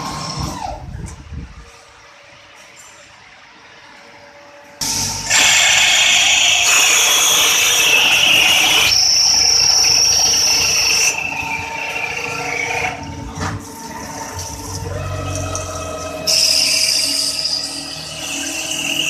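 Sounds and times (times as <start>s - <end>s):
machine cutting whine: 4.1s - 19.0s.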